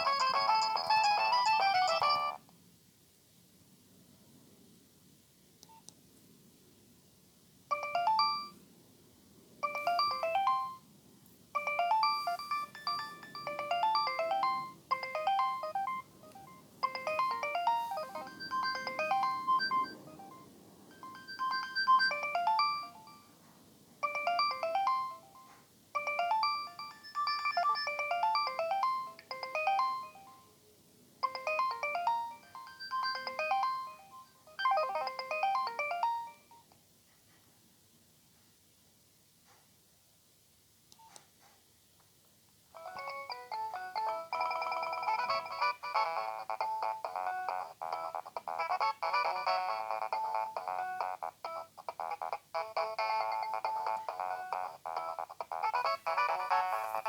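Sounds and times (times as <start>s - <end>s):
phone ringtone beeping melody: 0.0s - 2.4s, 7.7s - 8.6s, 9.6s - 10.9s, 11.6s - 23.3s, 24.0s - 30.5s, 31.2s - 36.6s, 42.8s - 57.0s.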